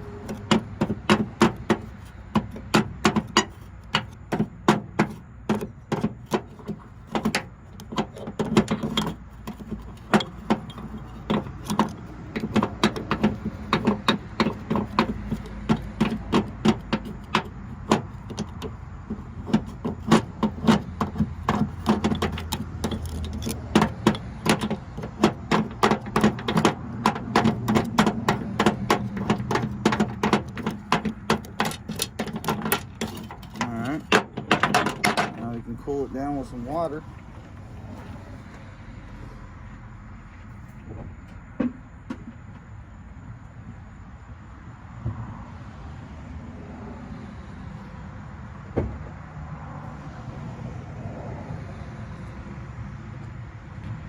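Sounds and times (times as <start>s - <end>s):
metal tool scraping and chipping: 0.0s - 38.3s.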